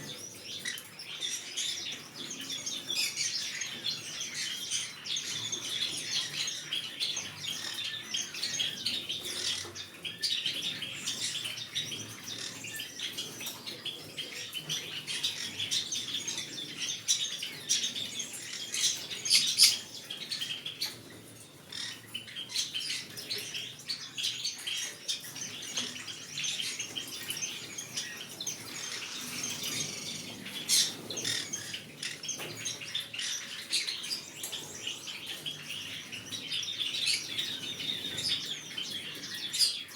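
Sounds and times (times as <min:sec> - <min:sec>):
parrot chirping and squawking: 0:28.6 - 0:31.7.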